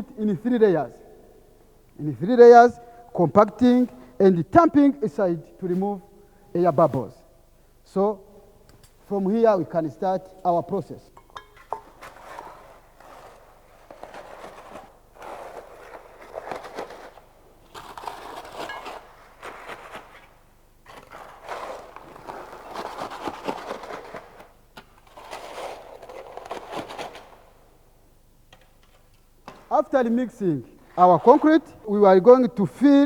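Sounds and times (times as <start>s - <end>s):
tool scraping through concrete mix: 11.6s - 27.4s, 30.9s - 31.8s.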